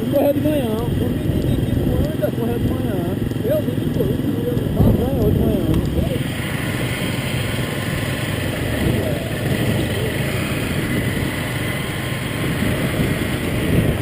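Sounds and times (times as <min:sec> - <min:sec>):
vehicle engine running: 0:00.0 - 0:14.0
faint voices: 0:08.6 - 0:11.1.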